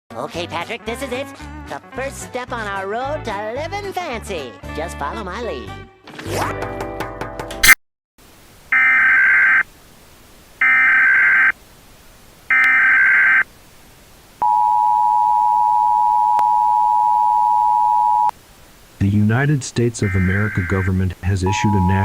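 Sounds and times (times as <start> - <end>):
screeching digital data bursts: 8.7 - 9.6, 10.6 - 11.5, 12.5 - 13.4, 20.0 - 22.0
two-tone attention signal: 8.8 - 9.6, 20.0 - 22.0.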